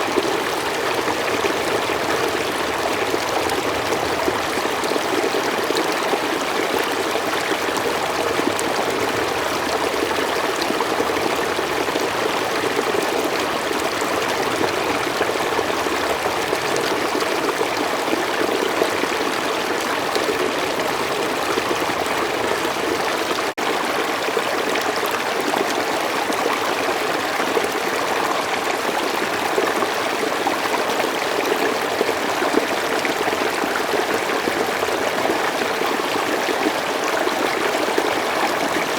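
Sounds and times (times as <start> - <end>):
stream running: 0.0 - 38.9.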